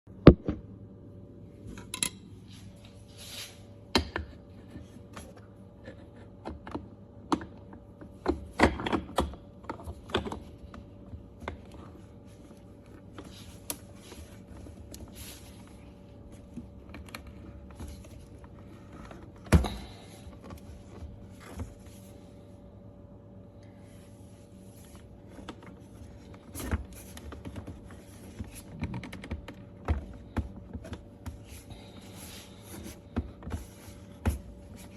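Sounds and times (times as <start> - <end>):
faint steady hum: 0.1 - 34.9.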